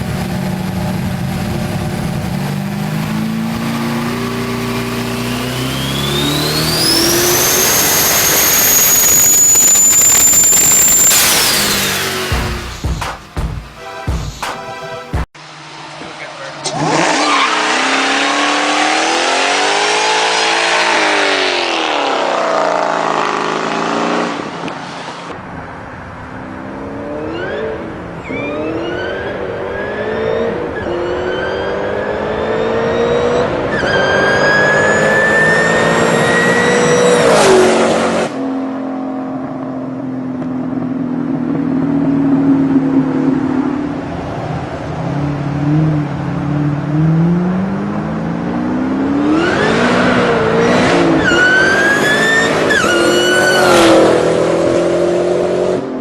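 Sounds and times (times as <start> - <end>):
car accelerating with turbo whine: 0.0 - 13.3, 14.8 - 56.0
car engine revving: 0.0 - 13.9, 15.4 - 56.0.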